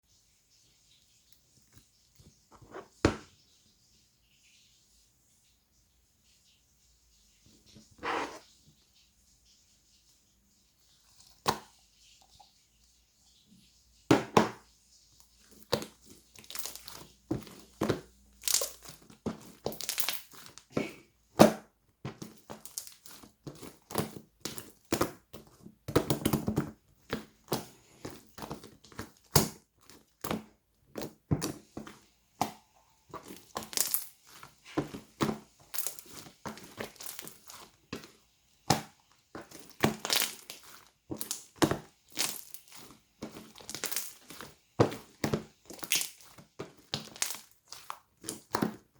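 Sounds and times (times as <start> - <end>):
crunching and crinkling: 15.3 - 21.1, 22.1 - 48.9.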